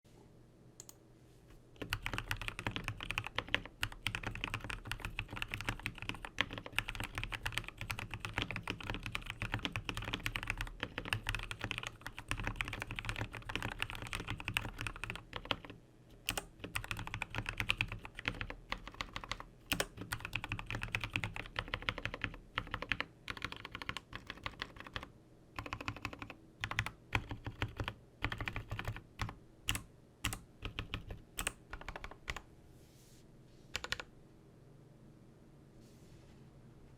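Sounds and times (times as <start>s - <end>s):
mechanical keyboard typing: 1.8s - 32.4s, 33.8s - 34.1s.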